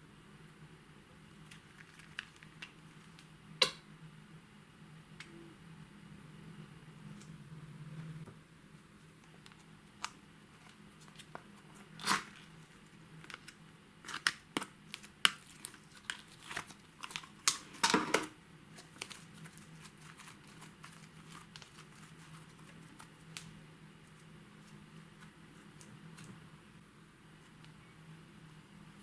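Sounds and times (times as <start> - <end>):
slime clicking and crackling: 13.3 - 17.8.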